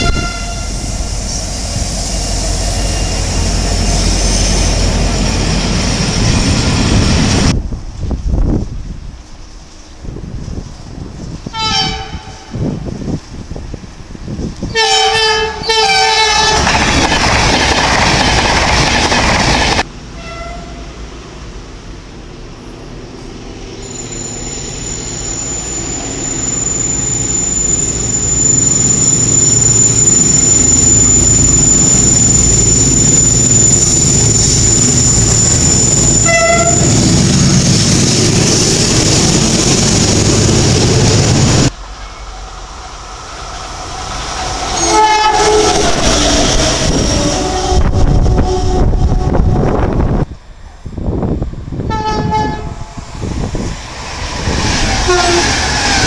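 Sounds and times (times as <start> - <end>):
short train horn toots: 0.0 - 1.2, 11.6 - 12.6, 14.8 - 16.7, 20.2 - 20.9, 35.9 - 37.0, 44.7 - 46.2, 47.2 - 49.9, 51.8 - 53.1, 55.0 - 55.5
two-tone train horn: 0.0 - 1.2, 11.5 - 12.7, 14.7 - 16.8, 20.2 - 21.0, 35.4 - 37.0, 44.7 - 46.2, 47.2 - 50.1, 51.8 - 53.2, 55.0 - 55.6
high steady train whine: 0.0 - 56.0
train passing at speed: 0.0 - 56.0
wheels clattering on rails: 16.2 - 19.9.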